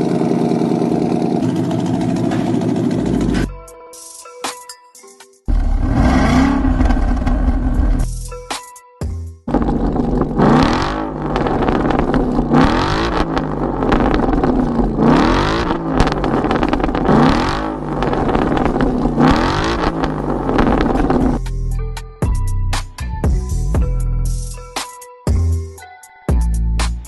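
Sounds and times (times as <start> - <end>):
car engine revving: 0.0 - 3.5, 5.5 - 8.1, 9.5 - 21.6.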